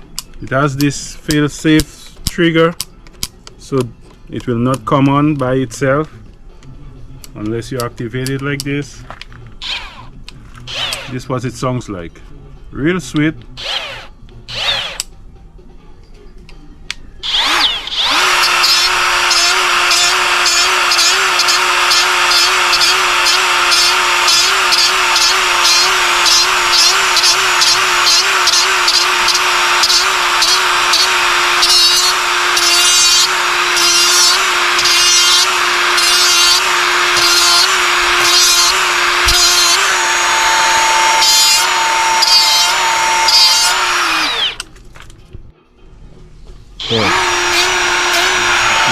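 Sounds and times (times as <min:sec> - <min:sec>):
angle grinder whining: 0:09.6 - 0:10.1, 0:10.7 - 0:11.2, 0:13.6 - 0:15.1, 0:17.2 - 0:44.7, 0:46.8 - 0:48.9.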